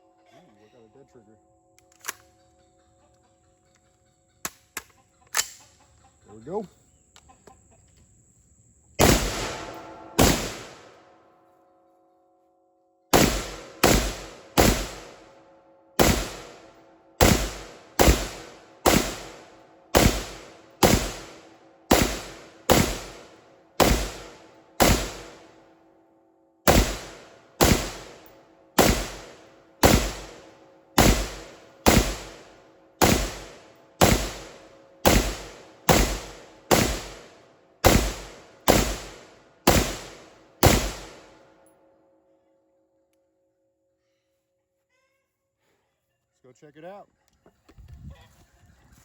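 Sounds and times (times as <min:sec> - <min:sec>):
rifle shots with echo: 0:09.0 - 0:11.2, 0:13.1 - 0:25.8, 0:26.6 - 0:41.6.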